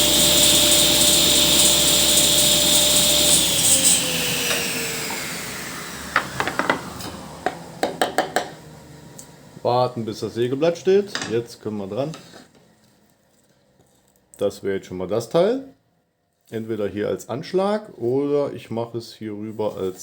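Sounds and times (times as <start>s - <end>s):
table saw spinning down: 0.0s - 10.8s.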